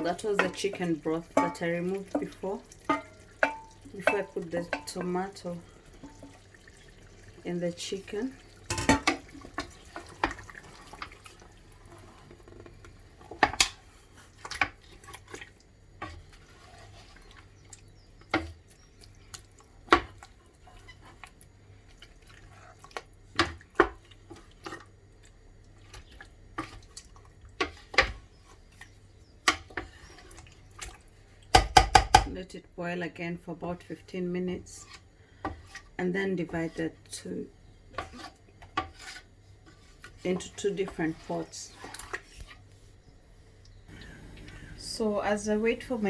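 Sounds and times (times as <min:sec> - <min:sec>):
utensil knocking against cooking pot: 0:00.1 - 0:05.2, 0:31.5 - 0:32.4
liquid dripping and splashing: 0:01.3 - 0:05.0, 0:05.6 - 0:07.5, 0:18.8 - 0:25.4.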